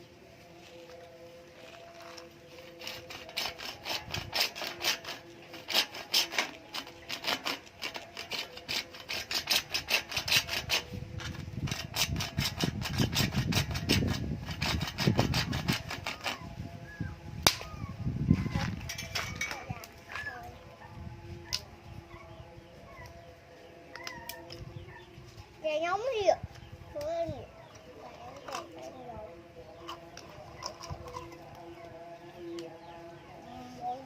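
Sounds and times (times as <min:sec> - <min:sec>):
hand tool clicking and scraping: 0:01.7 - 0:16.5, 0:18.6 - 0:20.3, 0:29.8 - 0:31.9.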